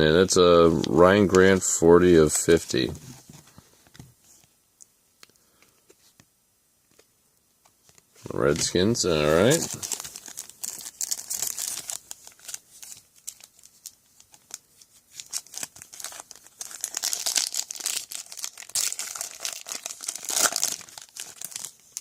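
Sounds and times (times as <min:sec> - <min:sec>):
foil wrapper crinkling and tearing: 0:08.5 - 0:22.0.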